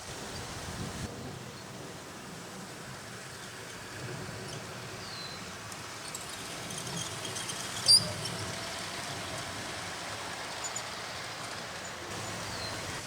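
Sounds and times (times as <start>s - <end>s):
outdoor background noise: 0.0s - 13.0s
model train running: 5.5s - 13.0s.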